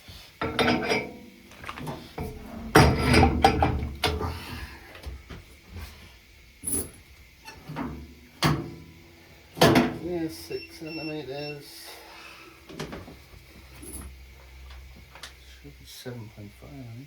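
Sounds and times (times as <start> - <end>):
tools and weights clinking: 0.4 - 4.2.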